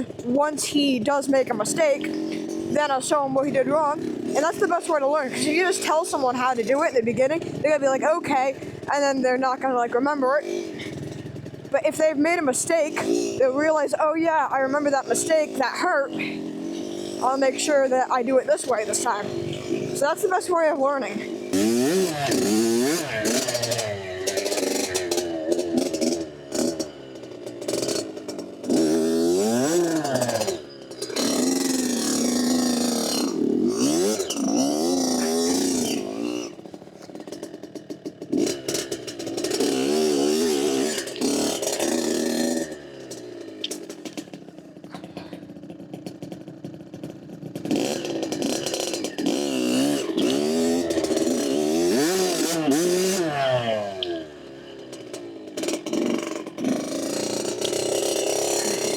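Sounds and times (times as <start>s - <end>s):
dirt bike engine revving: 0.0s - 58.9s.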